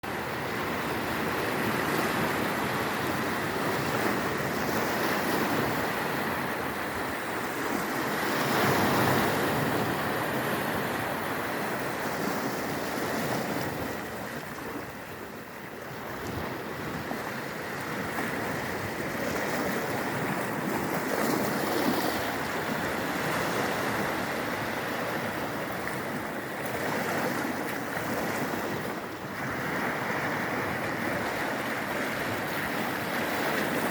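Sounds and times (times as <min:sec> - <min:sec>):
waves breaking on a beach: 0:00.0 - 0:33.9.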